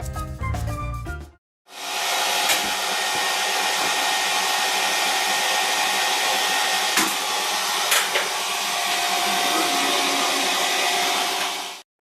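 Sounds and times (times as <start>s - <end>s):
music: 0.0s - 1.4s
electric fan motor whirring: 1.7s - 11.8s.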